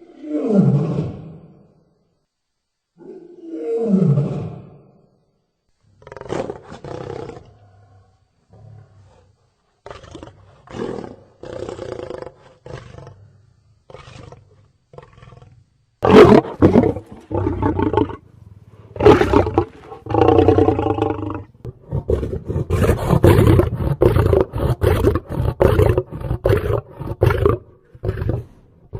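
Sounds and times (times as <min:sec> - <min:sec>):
lion grunts and growls: 0:05.9 - 0:28.9
lion roaring: 0:13.9 - 0:28.9.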